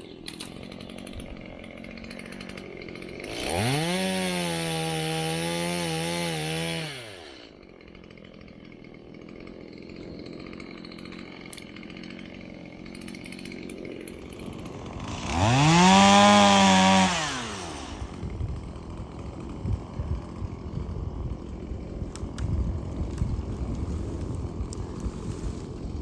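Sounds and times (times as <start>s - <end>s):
chainsaw revving and idling: 0.0s - 26.0s.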